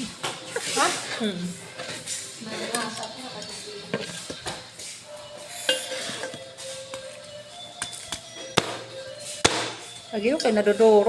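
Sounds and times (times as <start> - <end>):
music playing: 0.0 - 11.0
cutlery clinking against dishes: 5.4 - 7.1.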